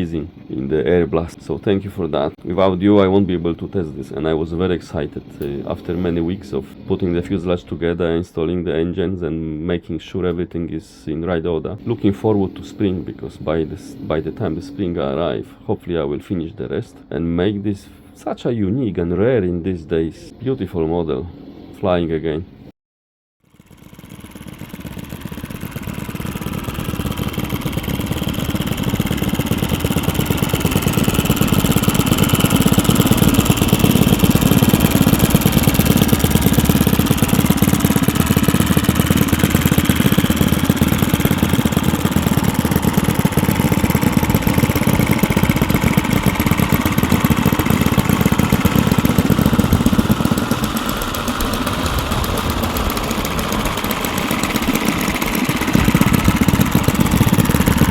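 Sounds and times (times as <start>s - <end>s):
model aircraft engines running: 23.5s - 57.9s.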